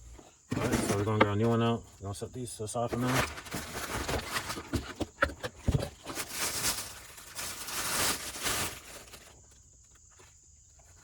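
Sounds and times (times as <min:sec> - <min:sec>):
rustling: 0:02.9 - 0:11.0.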